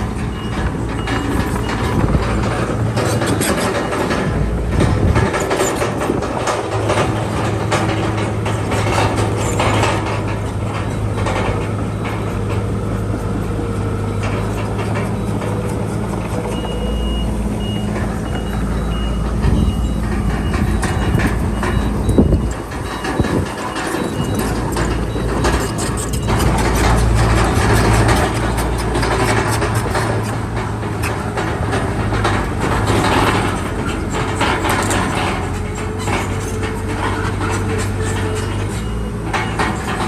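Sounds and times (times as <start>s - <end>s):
bulldozer engine running: 0.0s - 40.0s
steel tracks clanking: 0.0s - 40.0s
reversing alarm beeps: 0.1s - 4.3s, 13.8s - 29.2s, 37.0s - 40.0s.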